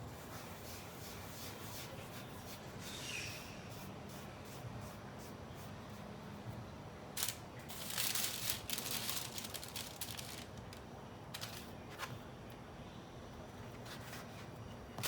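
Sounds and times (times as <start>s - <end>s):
rustling and crinkling: 7.2s - 12.2s.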